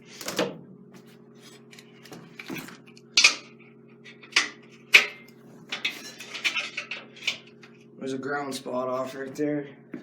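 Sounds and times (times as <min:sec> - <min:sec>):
metal clanking and clinking: 0:04.2 - 0:07.4.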